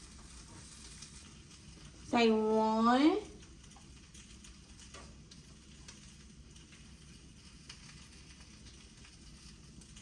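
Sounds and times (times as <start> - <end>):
sausages sizzling in a skillet: 0.0 - 10.0.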